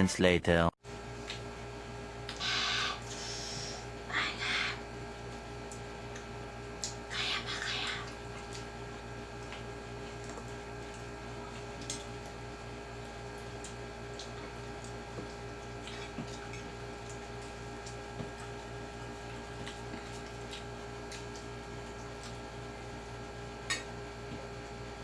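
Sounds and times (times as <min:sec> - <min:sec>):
steady electrical hum: 0:00.8 - 0:25.0
chewing squishes: 0:07.9 - 0:23.3.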